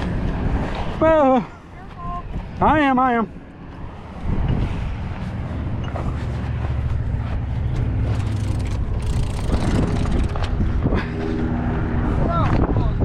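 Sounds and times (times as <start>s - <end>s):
engine running: 3.8s - 12.2s.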